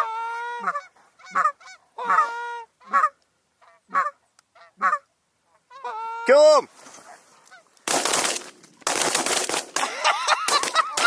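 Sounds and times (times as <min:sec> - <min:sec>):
goose call clucks: 0:00.0 - 0:06.4
goose call honks: 0:00.0 - 0:06.4.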